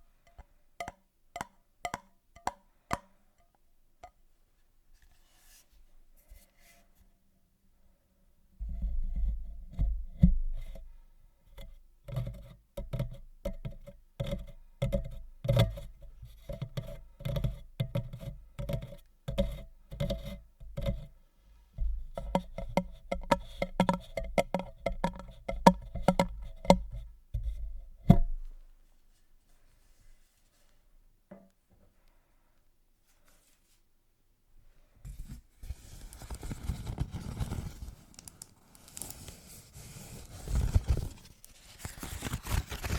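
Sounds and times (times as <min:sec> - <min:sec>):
tapping on hard object: 0:00.8 - 0:03.1, 0:12.1 - 0:21.1, 0:21.8 - 0:27.5.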